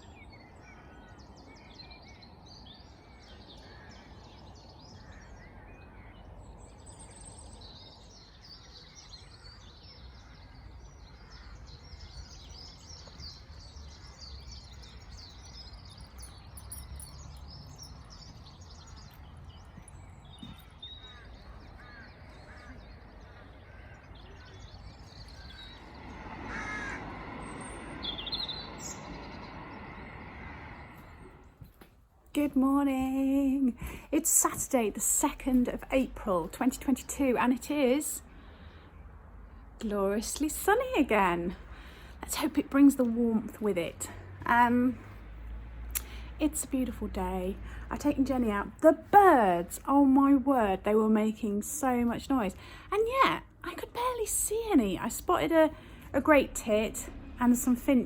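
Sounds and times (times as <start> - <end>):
songbirds chirping in chorus: 0.0 - 58.0
loud bird call: 20.3 - 31.6
low steady rumble: 25.0 - 33.5.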